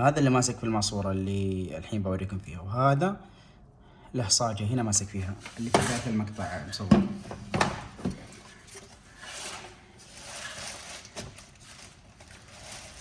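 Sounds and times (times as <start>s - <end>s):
soft rustling: 8.0s - 13.0s.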